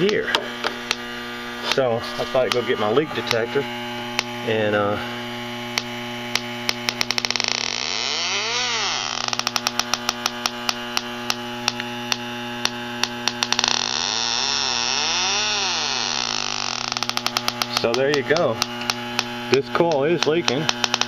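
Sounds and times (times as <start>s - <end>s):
steady hum: 0.0s - 21.0s
leak detector ticking: 0.8s - 4.5s, 5.5s - 21.0s
rising and falling tone: 6.8s - 9.9s, 13.1s - 17.4s.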